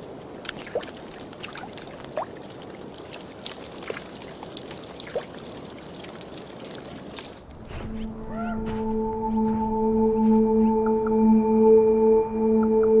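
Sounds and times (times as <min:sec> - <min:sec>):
water drips and plops: 0:00.0 - 0:07.5
water trickling over ice: 0:00.0 - 0:07.6.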